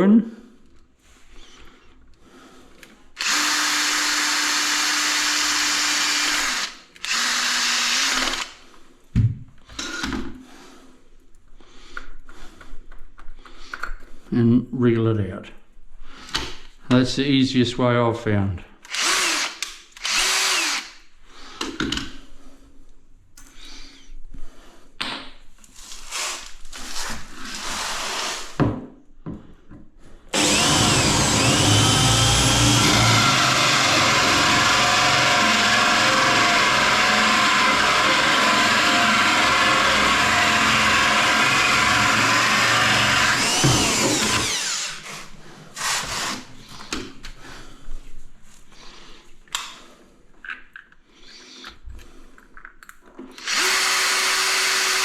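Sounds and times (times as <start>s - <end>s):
electric drill running: 3.2s - 8.6s, 18.9s - 21.0s, 30.4s - 45.2s, 53.4s - 55.0s.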